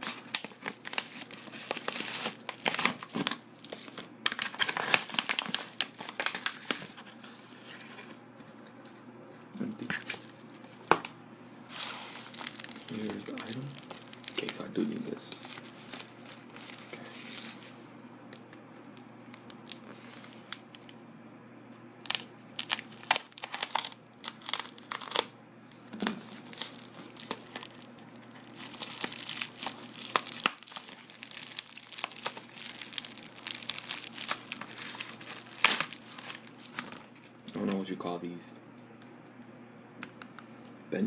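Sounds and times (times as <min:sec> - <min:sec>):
packaging crinkling and tearing: 0:00.0 - 0:07.8, 0:09.8 - 0:11.1, 0:11.7 - 0:17.8, 0:19.3 - 0:21.0, 0:22.0 - 0:37.9.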